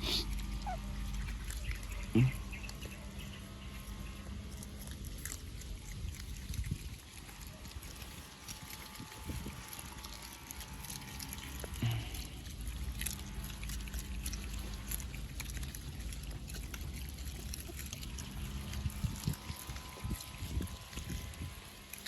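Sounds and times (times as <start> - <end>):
water trickling and splashing: 0.0 - 22.0.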